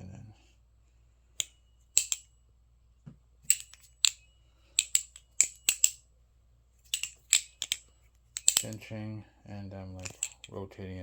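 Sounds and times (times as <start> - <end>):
balisong trainer handles clacking: 1.4 - 2.3, 3.4 - 6.0, 6.8 - 8.9, 10.0 - 10.6.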